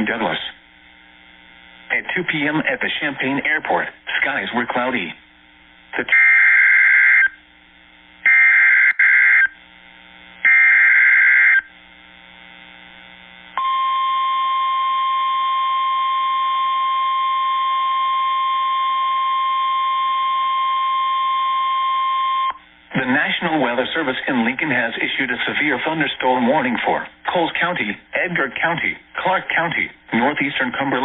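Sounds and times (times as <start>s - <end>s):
long warning alarm tone: 6.1s - 7.4s, 8.2s - 9.6s, 10.4s - 11.7s, 13.6s - 22.6s.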